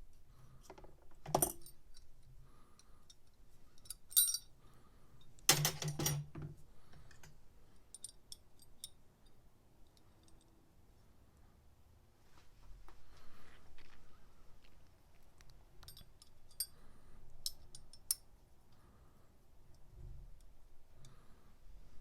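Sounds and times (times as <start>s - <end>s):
metal tools clinking: 1.3s - 2.1s, 3.8s - 4.5s, 5.5s - 6.4s, 15.8s - 16.7s.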